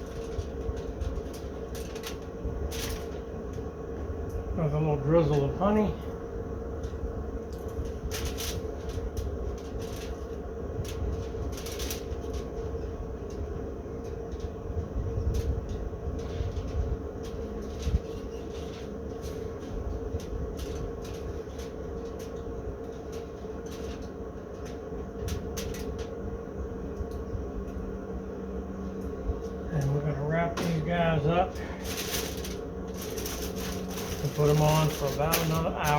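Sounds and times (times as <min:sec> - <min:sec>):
low rumble with constant hum: 0:00.0 - 0:35.9
short crackles: 0:30.6 - 0:35.9.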